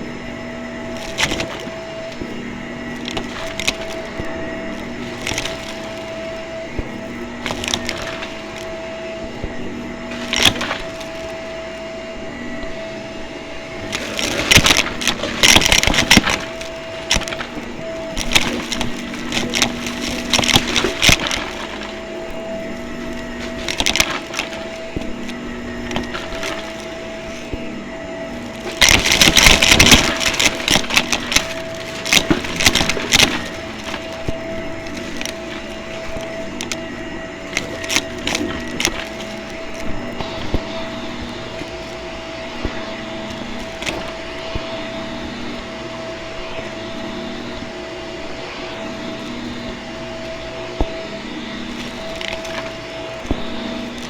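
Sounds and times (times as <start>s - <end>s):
debris crackling and rattling: 0.0s - 12.9s, 13.7s - 54.0s
vacuum cleaner motor hum: 0.0s - 54.0s.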